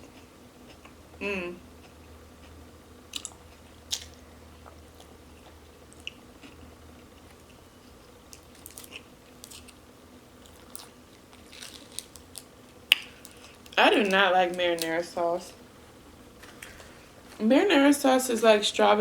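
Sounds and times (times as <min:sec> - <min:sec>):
person chewing: 0:03.1 - 0:09.8, 0:10.4 - 0:13.8.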